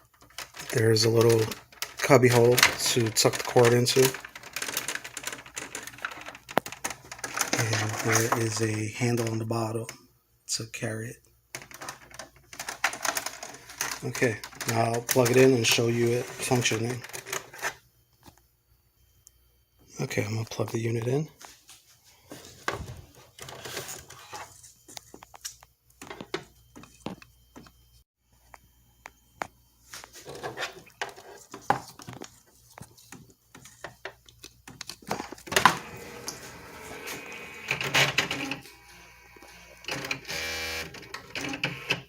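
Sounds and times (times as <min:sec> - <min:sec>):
clicks and knocks of handling: 0:00.0 - 0:10.0, 0:11.5 - 0:18.4, 0:28.5 - 0:36.4
typewriter motor whirring: 0:35.6 - 0:42.0.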